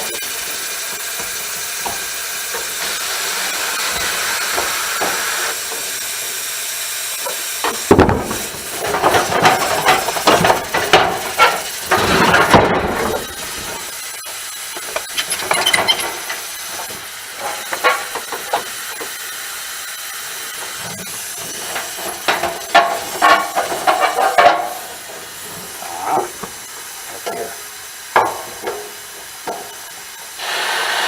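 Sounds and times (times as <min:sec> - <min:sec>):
steady hiss: 0:00.0 - 0:31.0
metallic clanks and rattles: 0:07.2 - 0:13.9, 0:14.8 - 0:19.2, 0:20.6 - 0:30.0.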